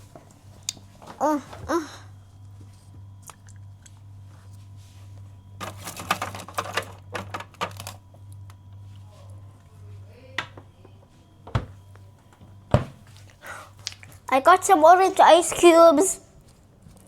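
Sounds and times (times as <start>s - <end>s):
steady low hum: 0.0s - 17.0s
ice cubes clattering: 5.6s - 8.0s.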